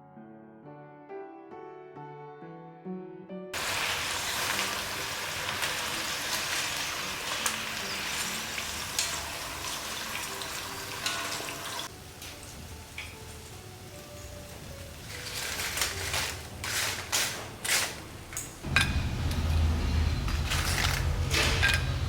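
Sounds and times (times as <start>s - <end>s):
food deep-frying in hot oil: 3.6s - 17.1s
sharp crackles of oil: 3.6s - 19.6s.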